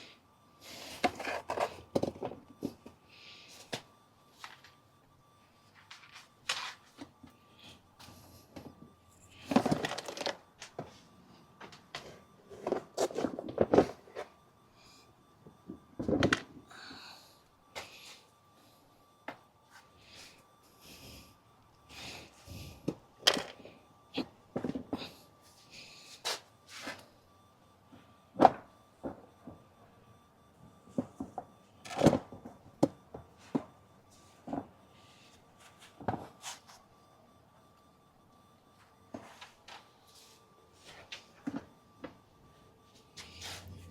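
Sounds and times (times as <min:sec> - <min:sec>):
plastic parts clattering: 0:09.4 - 0:10.8.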